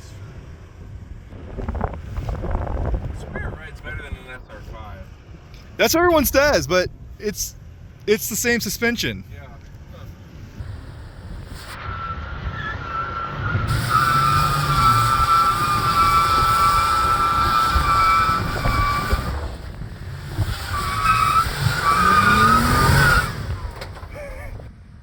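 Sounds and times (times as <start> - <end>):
engine running and revving: 10.5 - 24.7
tires squealing on rock: 10.5 - 24.7.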